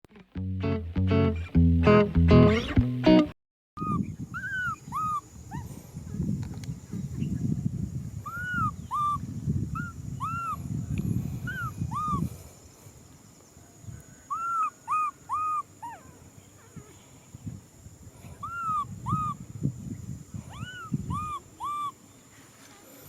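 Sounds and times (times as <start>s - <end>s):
baby monkey crying: 3.8s - 5.7s, 8.3s - 9.2s, 9.8s - 10.6s, 11.4s - 12.2s, 14.2s - 16.9s, 18.4s - 19.4s, 20.5s - 22.0s.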